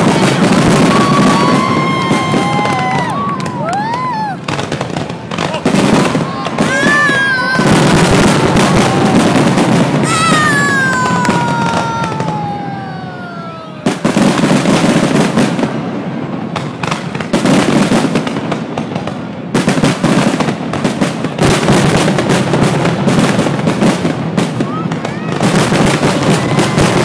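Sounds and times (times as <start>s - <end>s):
falling firework whistle: 0.0s - 4.8s, 5.4s - 15.0s
firework bangs and crackles: 0.0s - 27.0s.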